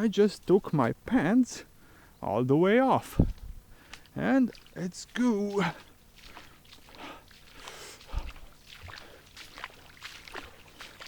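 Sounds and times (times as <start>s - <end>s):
water splashing around legs: 3.1s - 11.0s
low thump: 3.2s - 3.6s.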